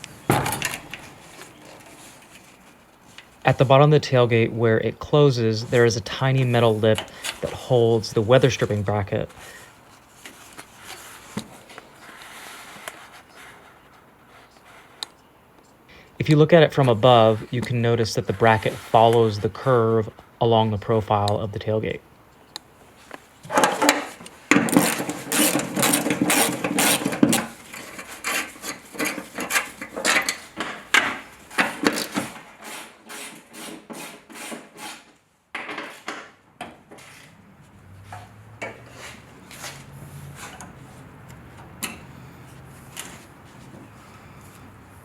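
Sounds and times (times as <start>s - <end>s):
tool scraping metal: 23.5s - 35.2s, 38.1s - 41.0s.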